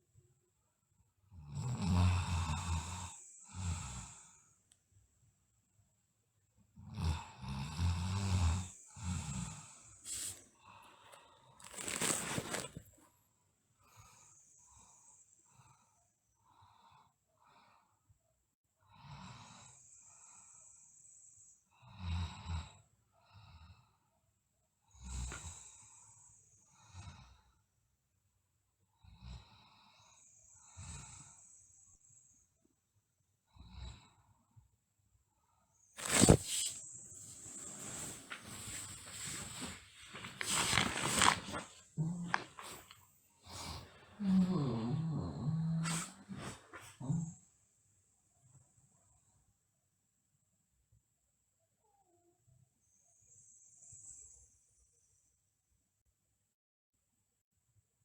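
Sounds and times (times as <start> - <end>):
light low snore: 1.4 - 4.4, 6.9 - 11.1, 41.9 - 47.5
airy hissing breaths: 9.1 - 12.2
girl snoring: 36.0 - 47.4.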